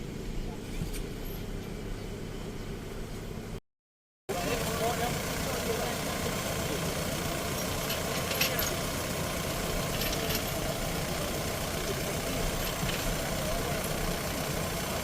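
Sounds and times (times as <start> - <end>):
diesel engine running: 4.3 - 15.0
sharp metallic clinks: 4.4 - 14.4.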